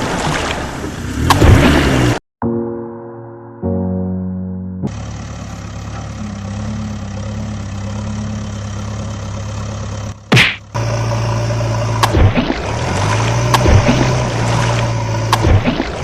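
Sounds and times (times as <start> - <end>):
vehicle engine idling: 4.9 - 15.5.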